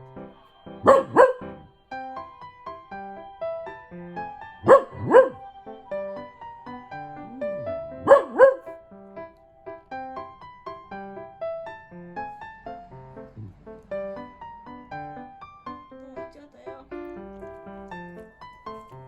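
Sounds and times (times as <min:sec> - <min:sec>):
soft piano music: 0:00.0 - 0:19.0
dog barking sharply: 0:00.9 - 0:01.5, 0:04.6 - 0:05.4, 0:08.0 - 0:08.7
ambulance siren: 0:03.9 - 0:08.6.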